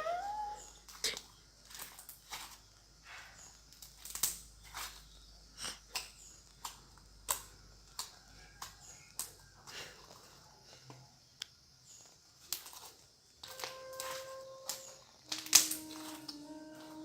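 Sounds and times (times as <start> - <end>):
slime popping and clicking: 13.5 - 16.2.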